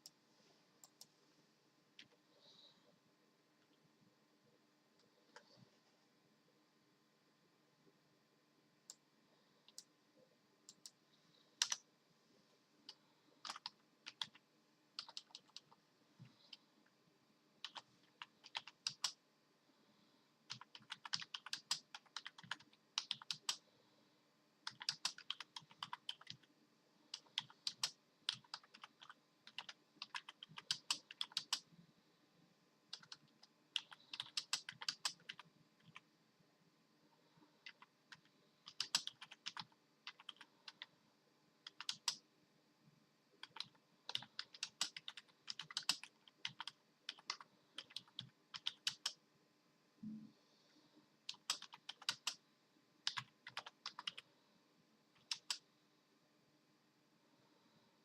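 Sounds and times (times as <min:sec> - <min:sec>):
typing on computer keyboard: 0:11.6 - 0:11.8, 0:12.9 - 0:14.4, 0:15.0 - 0:15.8, 0:17.6 - 0:19.2, 0:20.5 - 0:23.6, 0:24.6 - 0:26.5, 0:27.1 - 0:31.7, 0:32.9 - 0:36.0, 0:37.6 - 0:40.9, 0:41.6 - 0:42.2, 0:43.4 - 0:49.2, 0:51.3 - 0:52.4, 0:53.0 - 0:54.2, 0:55.2 - 0:55.6.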